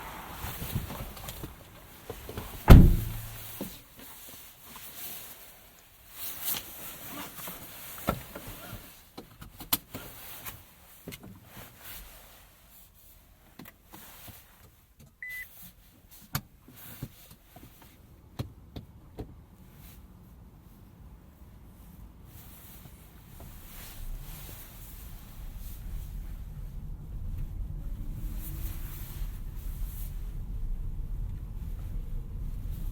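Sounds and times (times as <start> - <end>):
short beep: 15.2 - 15.5.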